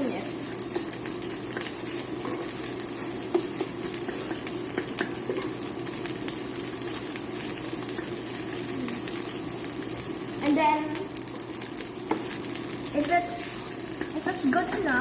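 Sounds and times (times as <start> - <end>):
food sizzling in a pan: 0.0 - 15.0.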